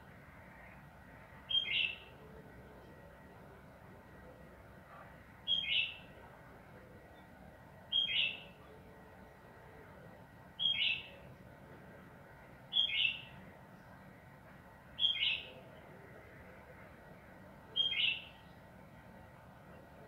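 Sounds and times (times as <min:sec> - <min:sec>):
bulbul singing: 0:01.4 - 0:02.2, 0:05.4 - 0:06.2, 0:07.9 - 0:08.7, 0:10.6 - 0:11.3, 0:12.7 - 0:13.4, 0:15.0 - 0:15.9, 0:17.7 - 0:18.6.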